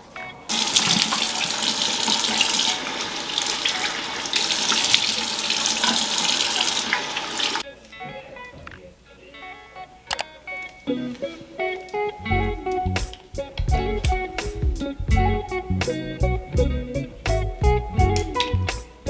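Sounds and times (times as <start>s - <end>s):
water running from sink tap: 0.5s - 7.6s.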